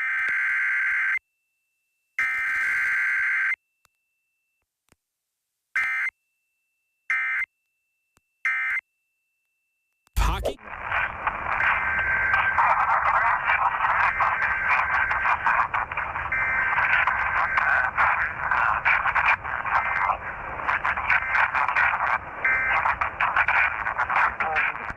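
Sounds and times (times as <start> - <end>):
radio static hiss and crackle: 10.2 - 24.9
tinny radio signal: 10.2 - 24.9.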